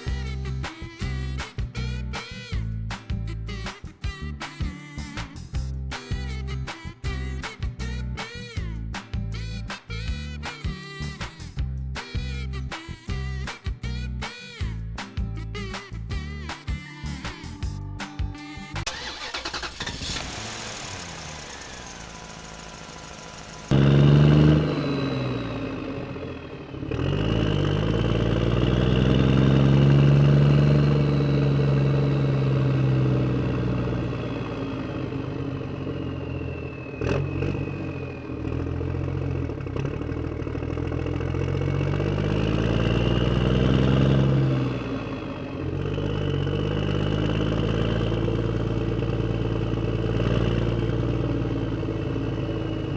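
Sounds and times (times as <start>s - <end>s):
heavy machine engine revving: 18.8s - 52.9s.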